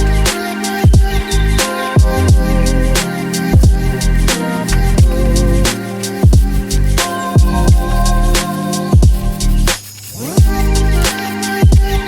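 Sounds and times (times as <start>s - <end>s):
hip-hop beat: 0.0s - 12.0s
sustained synth notes: 1.0s - 8.5s.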